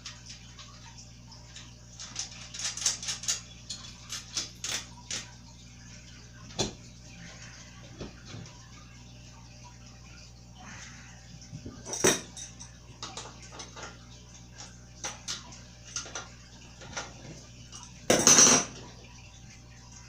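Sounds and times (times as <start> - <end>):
metal bike parts clinking: 11.8 - 14.0, 17.8 - 18.8.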